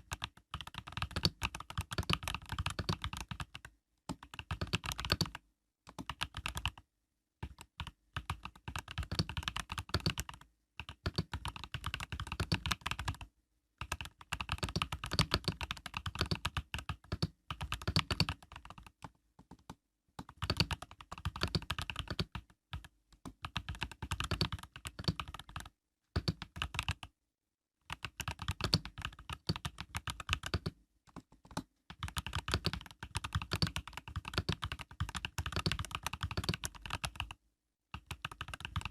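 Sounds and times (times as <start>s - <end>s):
mechanical keyboard keystroke clacks: 31.5s - 37.0s.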